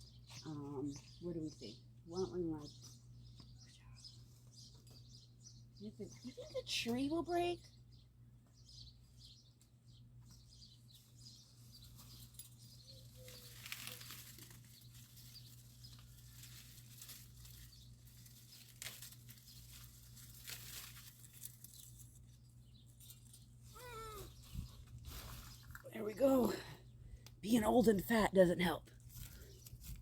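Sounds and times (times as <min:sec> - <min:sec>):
low steady hum: 0:00.0 - 0:30.0
corn husks rustling and tearing: 0:11.0 - 0:25.9, 0:28.9 - 0:30.0.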